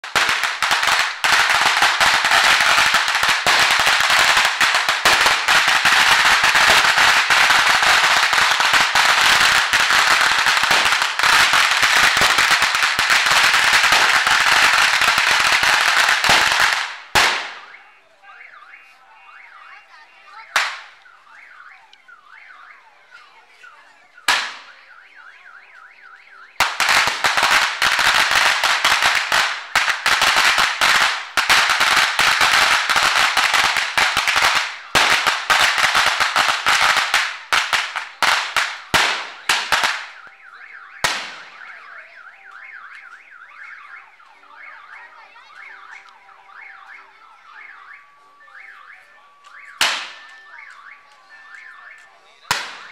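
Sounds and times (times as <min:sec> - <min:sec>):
loud bangs: 0:00.0 - 0:18.8, 0:26.2 - 0:41.8, 0:49.6 - 0:50.9, 0:52.5 - 0:52.9
firecrackers crackling: 0:00.0 - 0:52.9
car alarm warbling: 0:01.2 - 0:28.2, 0:37.8 - 0:52.9.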